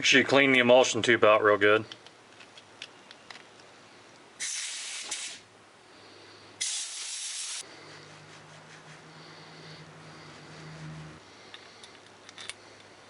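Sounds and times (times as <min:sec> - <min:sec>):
compressed air blasts: 0:04.4 - 0:05.5, 0:06.6 - 0:11.2.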